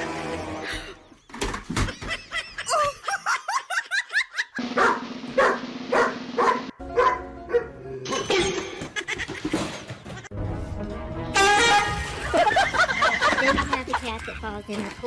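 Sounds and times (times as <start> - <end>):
dog barking and yipping: 4.6 - 7.8.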